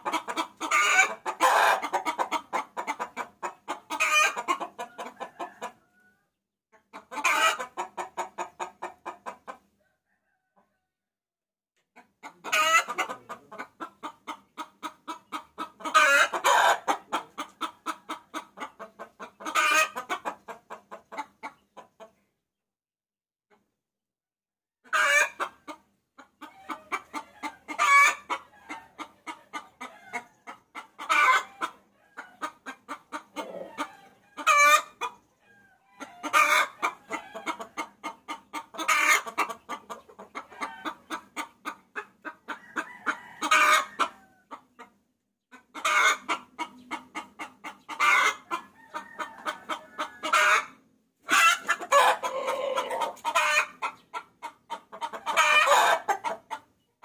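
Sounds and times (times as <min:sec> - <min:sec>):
hen clucking rapidly: 0:00.0 - 0:05.8, 0:06.8 - 0:09.8, 0:12.0 - 0:22.2, 0:24.8 - 0:56.8
hen drawn-out call: 0:51.3 - 0:53.7.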